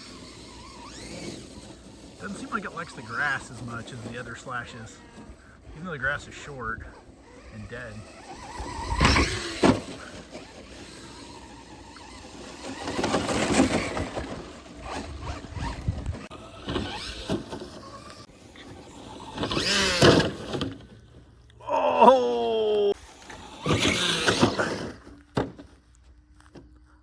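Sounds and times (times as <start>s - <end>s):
electric motor whining: 0.0s - 22.2s, 22.9s - 25.4s
tyres on grass: 0.0s - 27.0s
wind noise: 8.4s - 9.6s, 14.0s - 17.2s.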